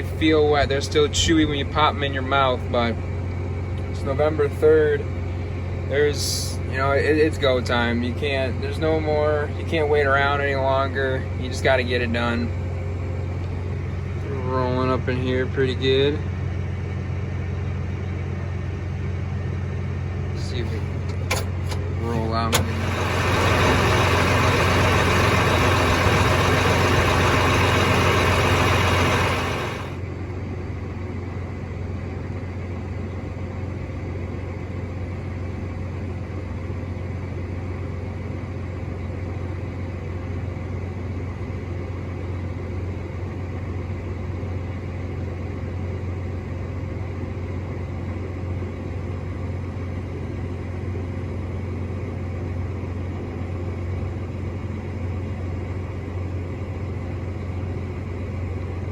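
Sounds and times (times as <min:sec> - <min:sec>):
tractor engine humming: 0:20.4 - 0:30.3.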